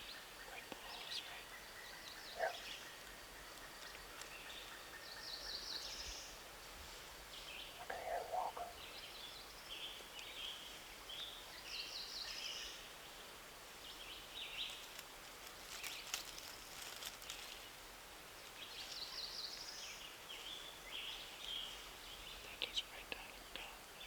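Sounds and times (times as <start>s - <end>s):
songbirds singing: 0.0s - 24.0s
faint clicks: 3.0s - 4.4s.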